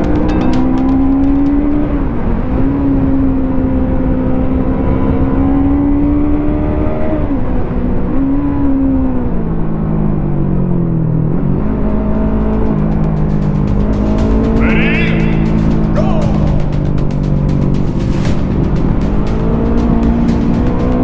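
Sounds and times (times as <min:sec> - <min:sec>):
motorcycle engine running: 0:00.0 - 0:02.2, 0:11.6 - 0:21.0.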